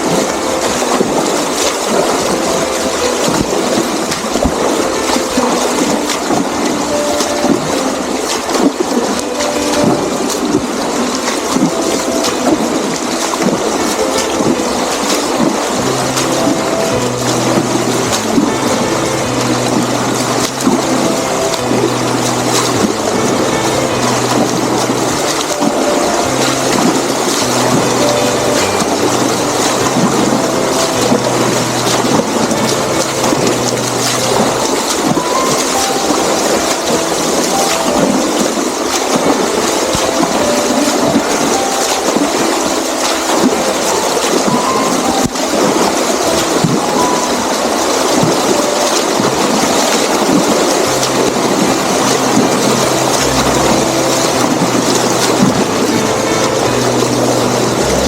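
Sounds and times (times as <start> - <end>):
water rushing at a dam: 0.0 - 58.0
low humming tones: 51.2 - 58.0.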